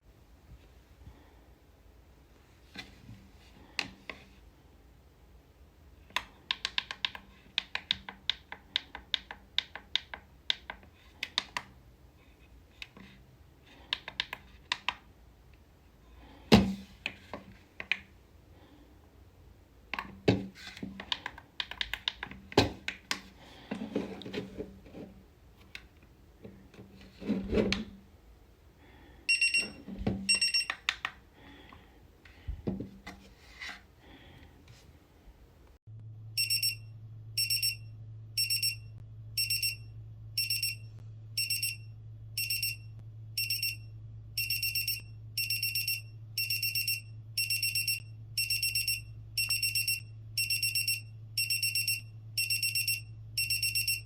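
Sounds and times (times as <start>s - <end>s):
short electronic beeps: 29.3s - 30.7s, 36.4s - 54.0s
alarm clock buttons clicking: 29.3s - 31.2s, 44.4s - 54.0s.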